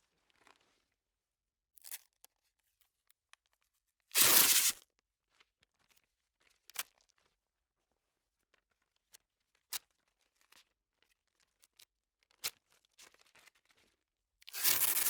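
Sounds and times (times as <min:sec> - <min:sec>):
tape ripping off roll: 0:04.2 - 0:04.8.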